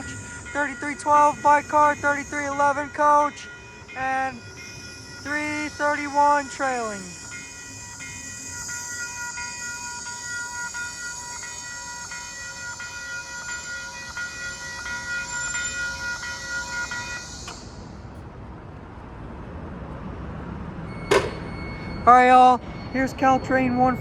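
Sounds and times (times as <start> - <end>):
train brake squeal: 0.0 - 18.1
low train rumble: 0.0 - 24.0
train wheel clicks: 21.1 - 21.6.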